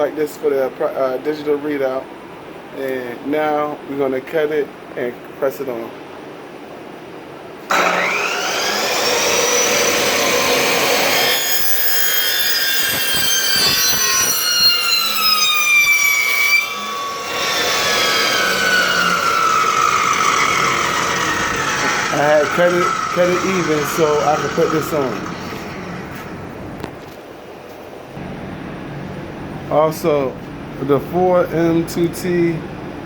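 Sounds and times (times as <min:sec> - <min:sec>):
power saw cutting hose: 0:07.7 - 0:26.9.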